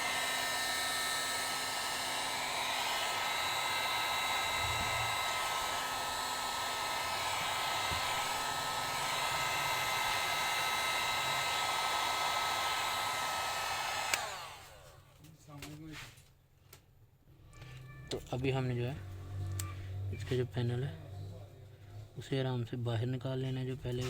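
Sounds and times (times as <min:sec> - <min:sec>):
hot air gun blowing: 0:00.0 - 0:14.9.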